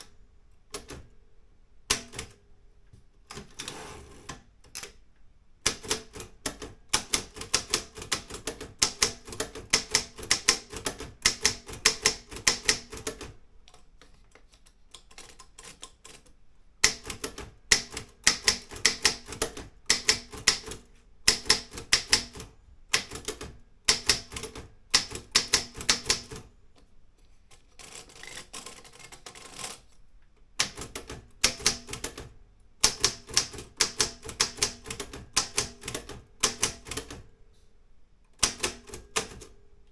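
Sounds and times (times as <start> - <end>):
typewriter key strikes: 1.9 - 2.4, 5.7 - 13.4, 16.8 - 26.5, 30.6 - 37.2, 38.4 - 39.6.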